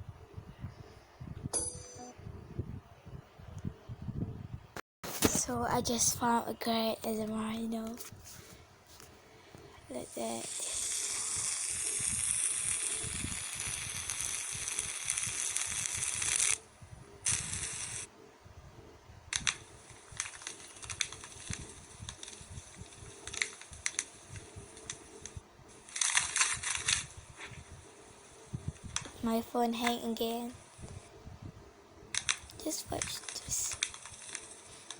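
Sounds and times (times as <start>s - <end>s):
steady crackling hiss: 5.1s - 34.9s
sharp clicks and crackles: 10.7s - 16.6s, 17.2s - 18.1s, 19.3s - 29.2s, 32.1s - 34.9s.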